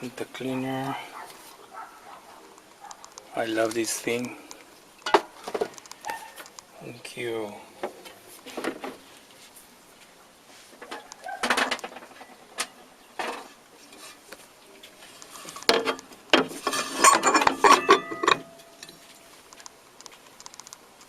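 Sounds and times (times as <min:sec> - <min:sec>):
handling clicks and knocks: 0:15.5 - 0:20.8.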